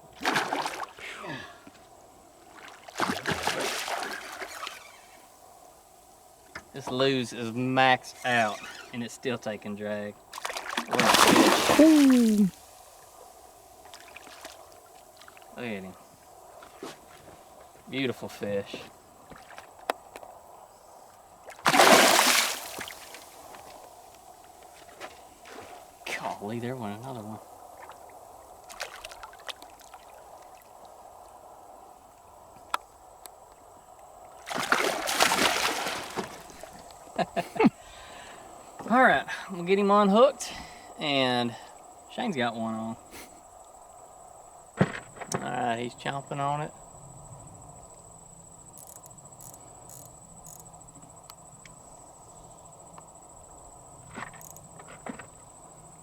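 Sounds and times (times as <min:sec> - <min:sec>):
crickets trilling: 0:00.0 - 0:56.0
water sloshing and splashing: 0:00.1 - 0:01.0, 0:02.4 - 0:04.9, 0:10.3 - 0:12.5, 0:13.8 - 0:15.6, 0:21.4 - 0:23.9, 0:27.8 - 0:30.8, 0:34.3 - 0:36.9.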